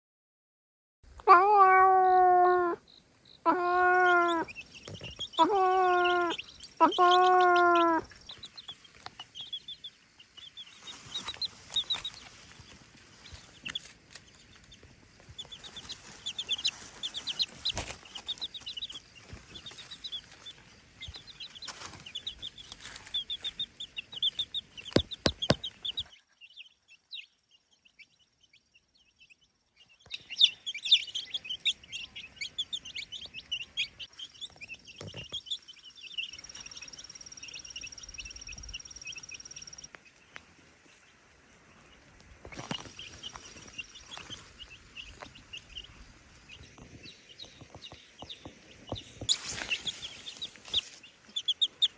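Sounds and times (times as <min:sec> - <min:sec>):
long drawn-out animal calls: 0:01.2 - 0:04.6
high-pitched chirping and peeping: 0:01.2 - 0:51.9.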